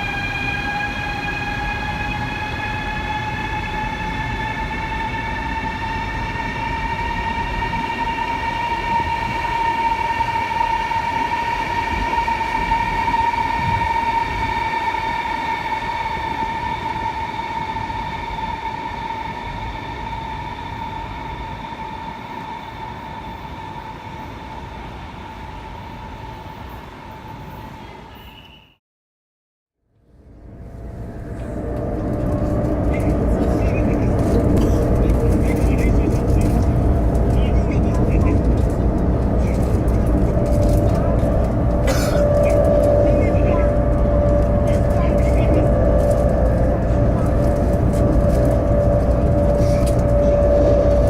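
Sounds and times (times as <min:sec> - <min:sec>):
mechanical whine over rumble: 0:29.9 - 0:51.0.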